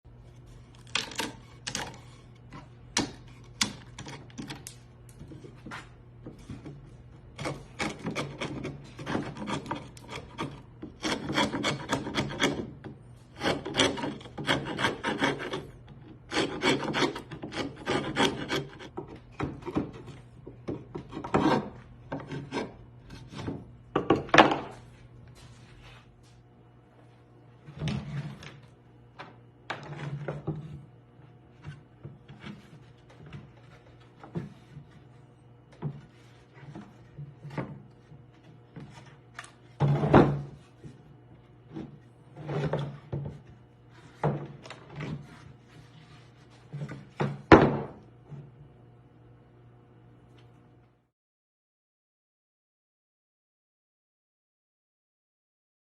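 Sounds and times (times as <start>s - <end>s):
hand tool rasping wood: 6.4s - 19.0s, 20.9s - 23.7s.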